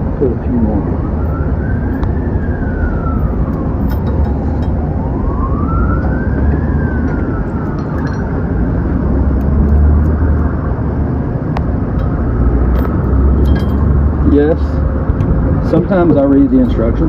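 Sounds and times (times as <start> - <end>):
emergency vehicle siren wailing: 0.0 - 17.0.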